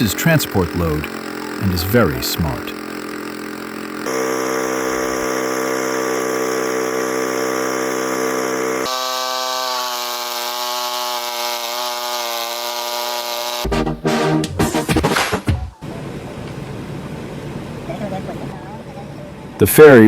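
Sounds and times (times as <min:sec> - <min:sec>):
chainsaw cutting through log: 0:00.0 - 0:13.8.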